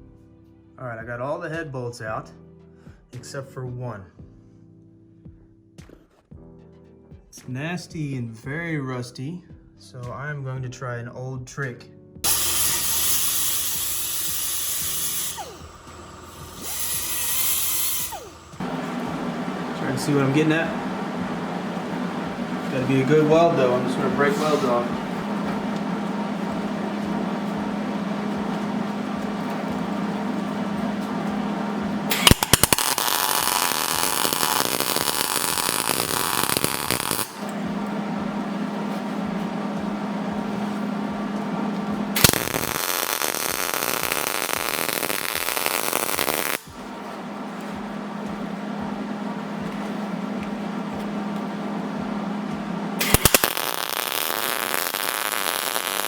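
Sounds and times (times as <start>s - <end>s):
electric welder arcing: 12.2s - 56.0s
steady low hum: 12.2s - 56.0s.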